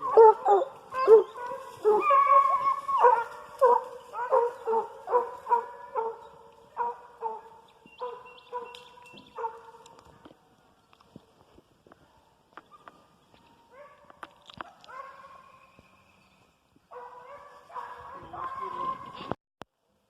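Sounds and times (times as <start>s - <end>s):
dog barking: 0.0s - 8.7s, 9.3s - 9.8s, 13.7s - 15.5s, 16.9s - 19.3s
hound baying: 0.0s - 9.9s, 16.9s - 19.3s.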